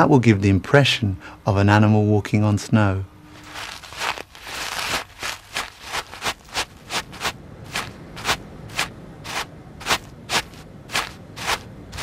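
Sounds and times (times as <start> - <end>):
salt crunching in a pouch: 3.4 - 12.0.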